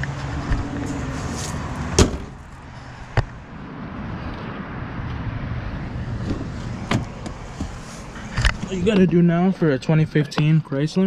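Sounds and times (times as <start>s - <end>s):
car panels slamming shut: 2.0s - 2.4s.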